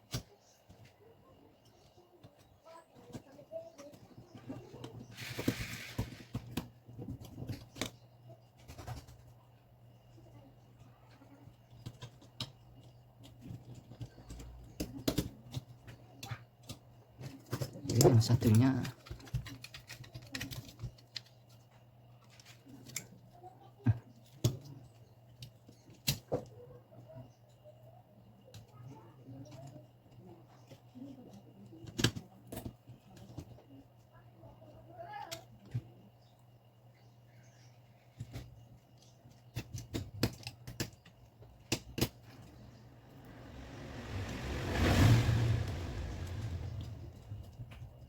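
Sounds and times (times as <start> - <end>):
small parts clicking and tapping: 11.2 - 18.1, 18.8 - 23.3
low steady hum: 42.2 - 48.0
vehicle passing: 42.2 - 48.0.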